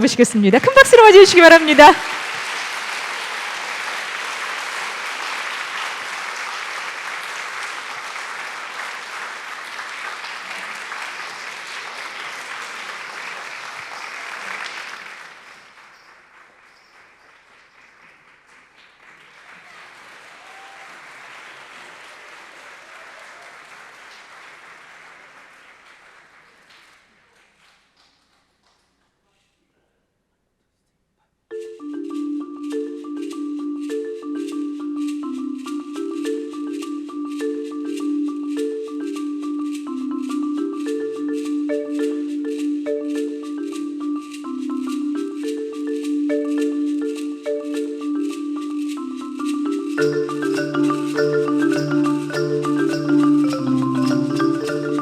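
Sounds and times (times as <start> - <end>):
audience applauding: 0.7 - 28.9, 50.0 - 55.0.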